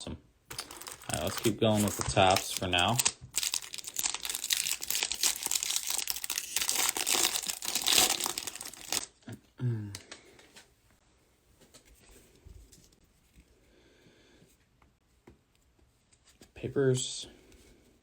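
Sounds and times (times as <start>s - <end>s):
plastic foil wrapper crackling: 0.5s - 9.2s.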